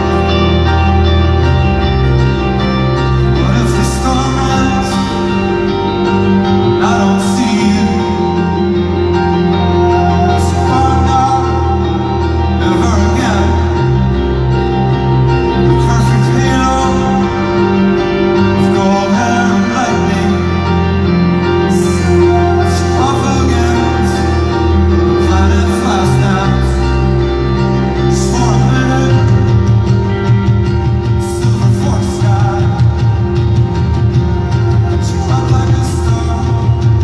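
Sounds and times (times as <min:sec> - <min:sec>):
person singing: 0:00.0 - 0:37.0
rock band playing live: 0:00.0 - 0:37.0.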